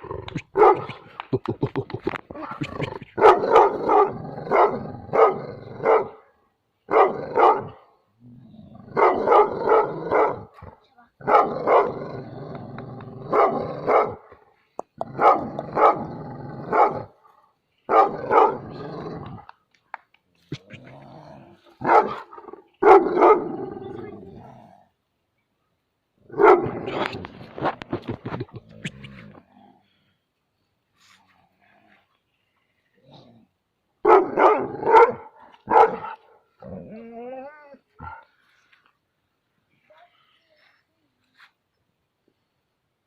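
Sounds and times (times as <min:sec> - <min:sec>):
dog barking: 0:00.6 - 0:01.0, 0:03.2 - 0:06.2, 0:06.9 - 0:07.8, 0:09.0 - 0:10.5, 0:11.2 - 0:11.9, 0:13.3 - 0:14.2, 0:15.2 - 0:16.0, 0:16.7 - 0:17.1, 0:17.9 - 0:18.6, 0:21.8 - 0:23.5, 0:26.3 - 0:26.8, 0:34.0 - 0:36.4
dog growling: 0:02.0 - 0:05.8, 0:20.5 - 0:24.9, 0:36.6 - 0:38.2.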